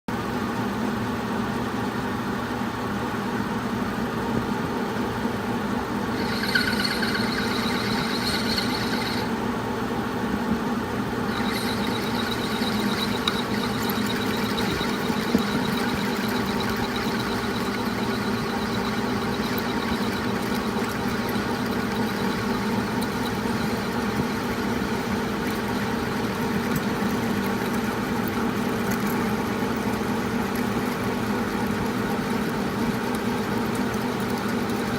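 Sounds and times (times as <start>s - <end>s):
metal lathe motor hum: 5.3s - 9.5s, 11.2s - 34.9s
thin high-pitched whine: 6.1s - 9.4s, 11.3s - 30.0s.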